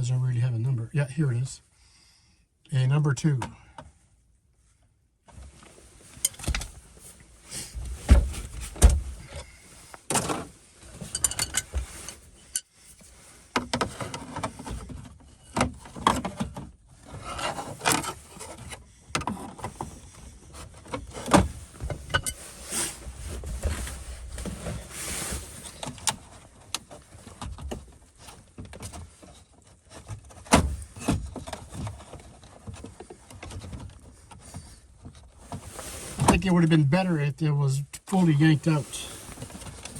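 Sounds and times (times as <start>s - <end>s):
hand tools clicking and rattling: 6.2s - 6.8s, 11.0s - 12.6s
thumps: 6.2s - 6.9s, 7.7s - 9.4s.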